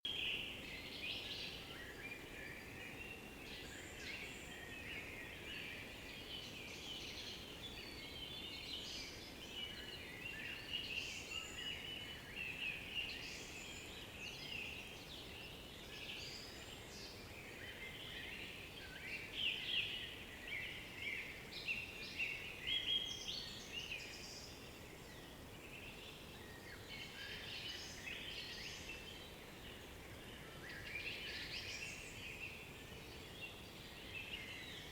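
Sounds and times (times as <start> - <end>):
songbirds chirping: 0.0 - 34.9
faint hiss: 0.1 - 34.9.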